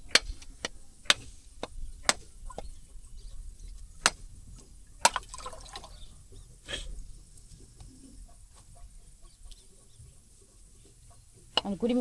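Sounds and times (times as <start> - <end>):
sharp short knocks: 0.0 - 2.7.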